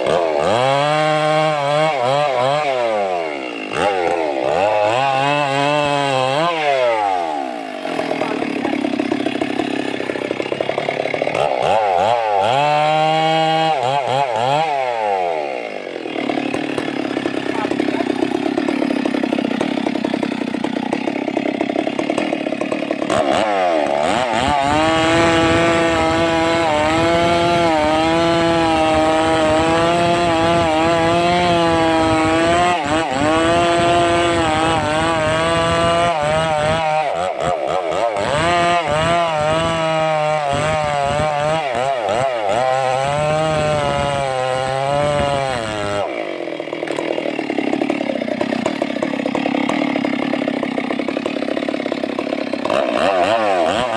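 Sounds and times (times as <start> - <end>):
chainsaw running: 0.0 - 53.9.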